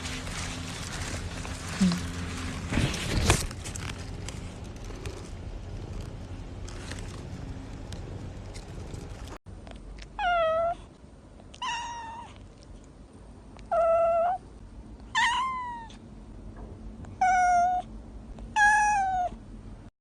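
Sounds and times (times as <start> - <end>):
cat meowing: 10.2 - 10.8, 11.5 - 12.4, 13.6 - 14.4, 15.1 - 16.0, 17.2 - 17.9, 18.5 - 19.4.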